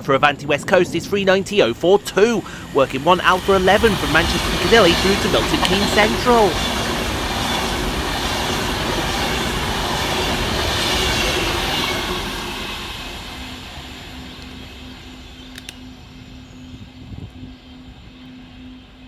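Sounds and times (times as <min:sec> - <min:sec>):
faint steady hum: 0:00.0 - 0:06.9
electric train passing at speed: 0:00.0 - 0:19.0
sharp clicks: 0:15.4 - 0:15.9.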